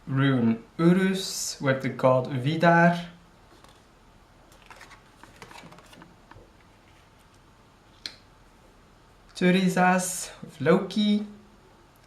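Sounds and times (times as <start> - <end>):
cards rustling and tapping: 4.5 - 7.4.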